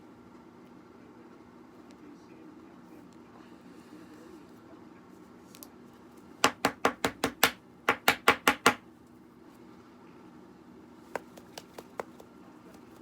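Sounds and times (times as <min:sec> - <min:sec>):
sharp taps on a hard surface: 0:06.4 - 0:08.8, 0:11.2 - 0:12.8.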